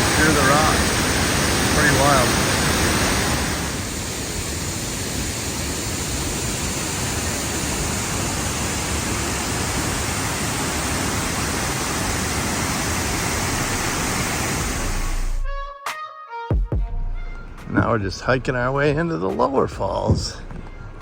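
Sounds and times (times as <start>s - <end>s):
waterfall roaring: 0.0s - 15.4s.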